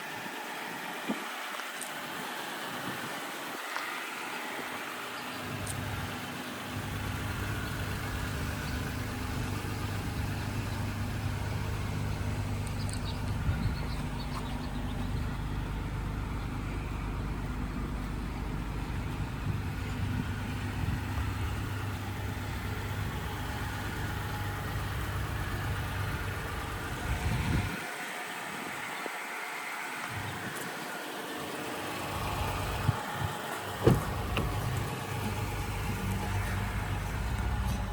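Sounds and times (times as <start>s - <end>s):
pickup engine idling: 1.9s - 37.9s.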